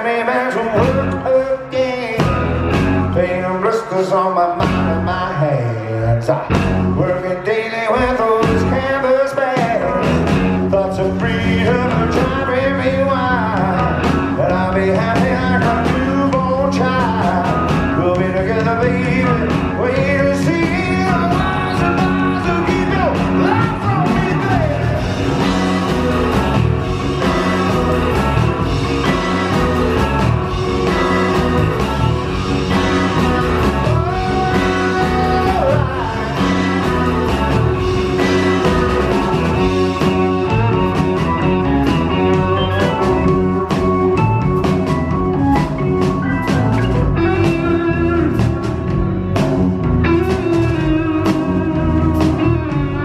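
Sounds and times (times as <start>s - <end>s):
bass: 0.0s - 53.0s
electric guitar: 0.0s - 53.0s
drum and cymbal hits: 19.4s - 47.5s.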